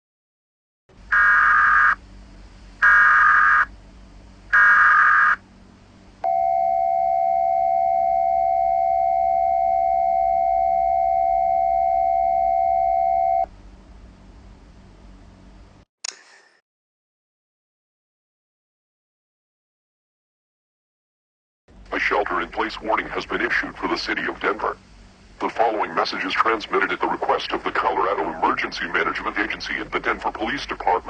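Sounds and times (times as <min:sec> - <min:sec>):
digital data screech: 0:01.1 - 0:02.0, 0:02.8 - 0:03.7, 0:04.6 - 0:05.4
two-tone alarm: 0:01.1 - 0:02.0, 0:02.8 - 0:03.7, 0:04.5 - 0:05.4, 0:06.2 - 0:13.5.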